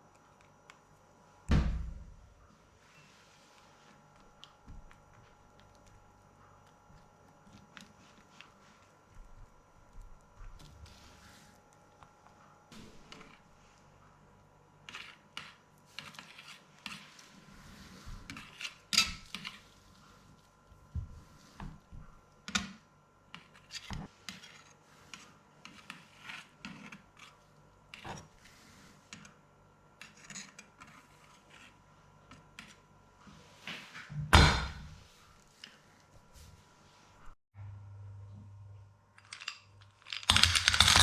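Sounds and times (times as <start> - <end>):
loud knock: 1.5 - 2.1.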